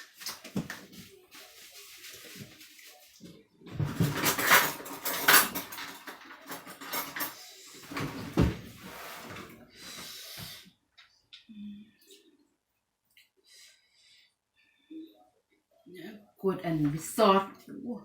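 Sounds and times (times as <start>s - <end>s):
kitchen utensils clattering: 3.7s - 9.6s.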